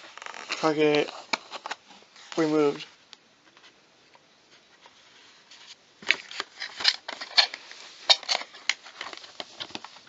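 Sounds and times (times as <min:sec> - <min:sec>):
packaging crinkling: 0:00.0 - 0:02.4.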